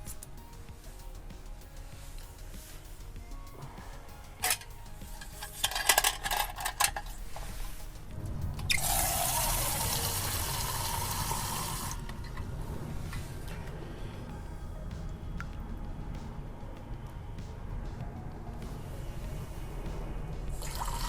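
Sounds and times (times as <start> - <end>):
water pouring into container: 7.1 - 14.6, 20.5 - 21.0.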